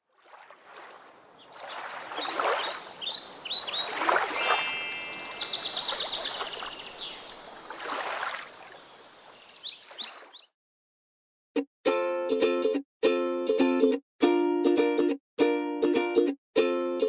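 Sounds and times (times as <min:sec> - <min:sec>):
soft outdoor hiss: 0:01.0 - 0:09.9
birds chirping and trilling: 0:01.2 - 0:10.5.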